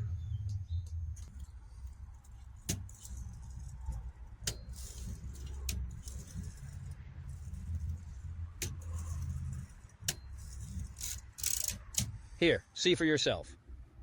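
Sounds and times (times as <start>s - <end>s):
steady low rumble: 0.0s - 11.3s
typewriter clicks and rattling: 8.6s - 12.2s.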